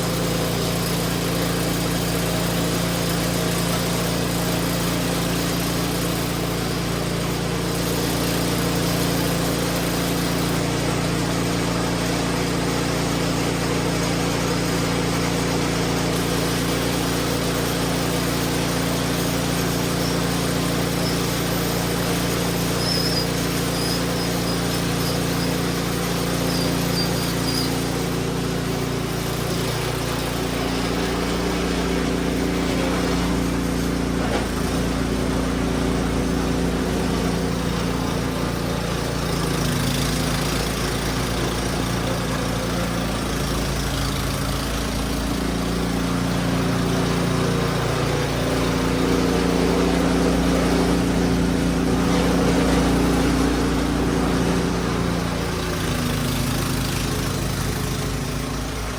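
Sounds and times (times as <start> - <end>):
snow blower engine running: 0.0 - 58.9.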